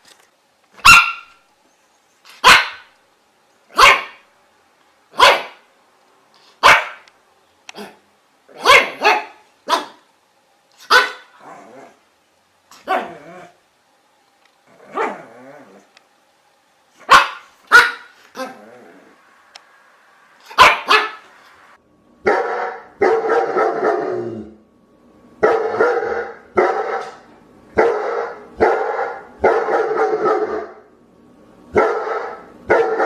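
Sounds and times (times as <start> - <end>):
dog barking: 0.8 - 1.4, 2.4 - 2.9, 3.7 - 4.2, 5.2 - 5.7, 6.6 - 7.0, 7.8 - 10.1, 10.8 - 11.3, 12.8 - 13.2, 14.9 - 15.2, 17.0 - 18.6, 20.5 - 21.3, 22.2 - 24.1, 25.4 - 30.8, 31.7 - 33.0.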